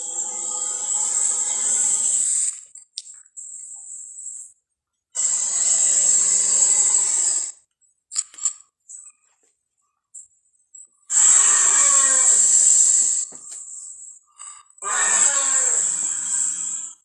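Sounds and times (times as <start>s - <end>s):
loud rough animal call: 11.1s - 13.3s, 14.8s - 17.0s.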